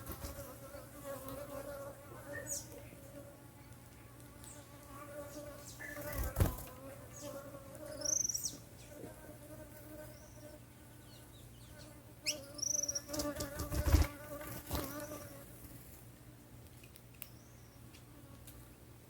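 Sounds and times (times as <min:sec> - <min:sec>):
insect buzzing: 0:00.0 - 0:15.7
finch high chirps: 0:12.3 - 0:13.2.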